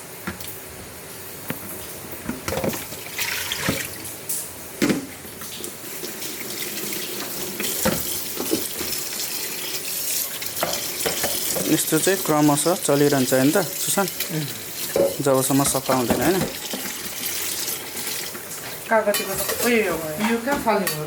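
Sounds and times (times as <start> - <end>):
water running and splashing: 1.3 - 4.3, 5.0 - 20.7.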